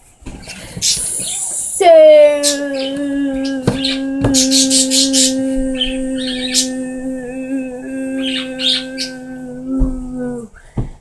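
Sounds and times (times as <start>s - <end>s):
person holding a long note: 1.8s - 10.6s.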